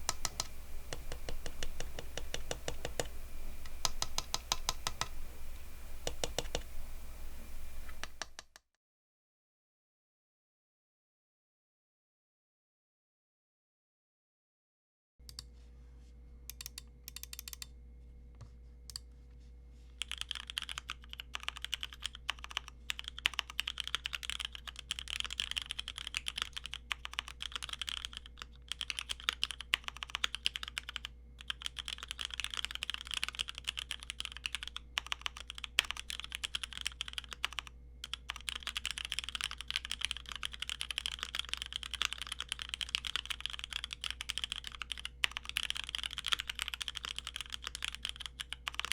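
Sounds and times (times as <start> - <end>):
mechanical keyboard typing: 0.0 - 8.4, 16.5 - 17.7, 20.0 - 48.9.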